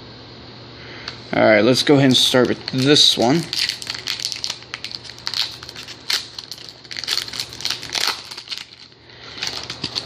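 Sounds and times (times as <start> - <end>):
foil wrapper crinkling: 2.1 - 10.0.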